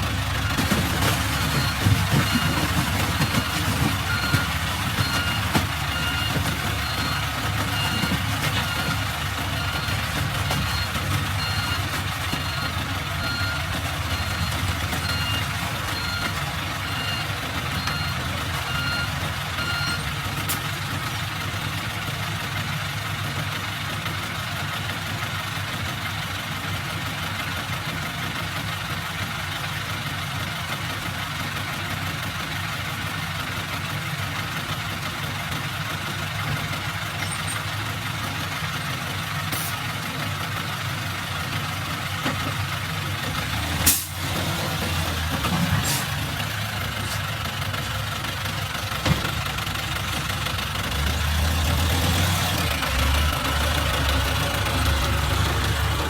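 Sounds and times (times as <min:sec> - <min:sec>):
heavy diesel machinery running: 0:00.0 - 0:56.0
reversing alarm beeping: 0:01.4 - 0:20.1.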